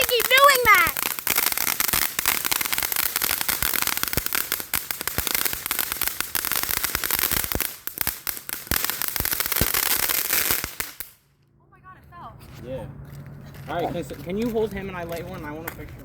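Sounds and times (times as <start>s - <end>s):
firework crackling: 0.0s - 11.3s.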